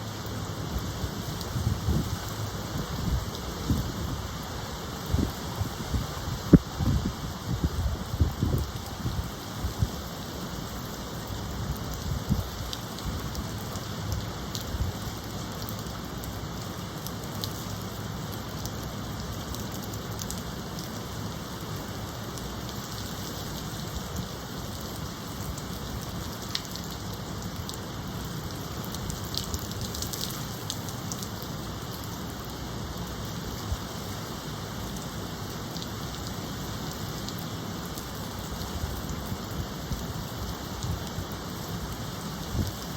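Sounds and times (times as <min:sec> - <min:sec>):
low wind rumble: 0:00.0 - 0:10.5, 0:11.4 - 0:13.3
heavy rain falling: 0:00.0 - 0:42.9.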